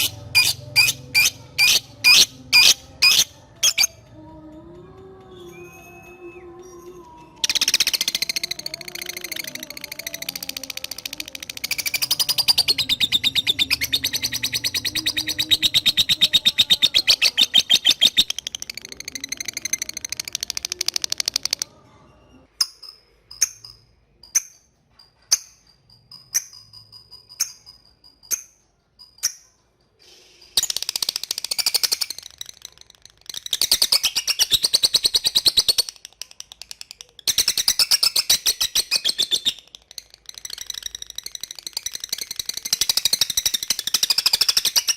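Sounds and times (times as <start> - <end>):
lovebird chattering: 0.0 - 4.0, 7.1 - 21.7, 30.6 - 44.9
sharp bird chirps: 0.0 - 4.0, 5.6 - 21.7.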